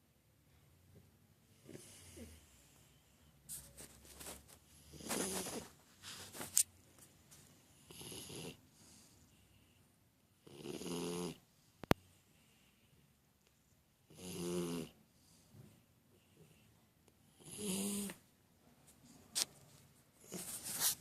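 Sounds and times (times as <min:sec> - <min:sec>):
dog snoring: 0:04.8 - 0:05.7, 0:07.8 - 0:08.6, 0:10.4 - 0:11.4, 0:14.1 - 0:15.0, 0:17.3 - 0:18.2.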